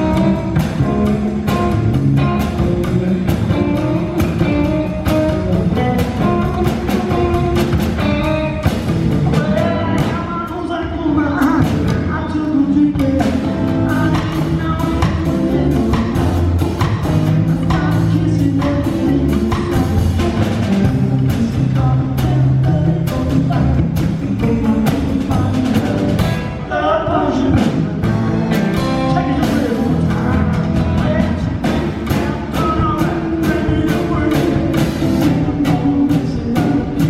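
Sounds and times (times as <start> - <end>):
drum kit beat: 0.0 - 10.7, 11.3 - 37.0
live rock band playing: 0.0 - 37.0
person singing: 0.0 - 37.0.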